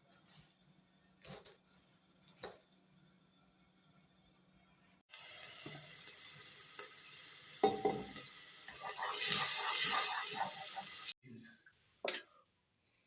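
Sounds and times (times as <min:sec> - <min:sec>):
tap water running into sink: 0:05.2 - 0:11.1
kitchenware clattering: 0:07.6 - 0:08.2.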